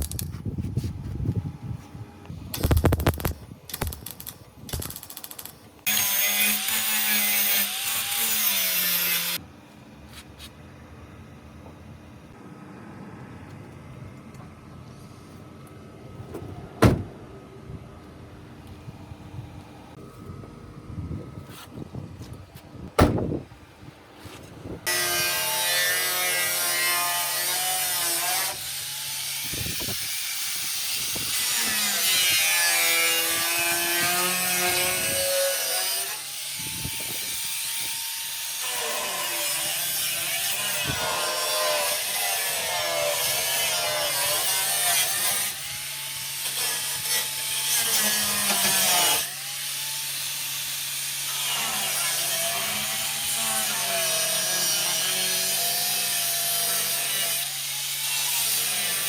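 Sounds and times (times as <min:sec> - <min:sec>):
power tool grinding sheet metal: 0:04.9 - 0:09.4, 0:24.9 - 0:59.0.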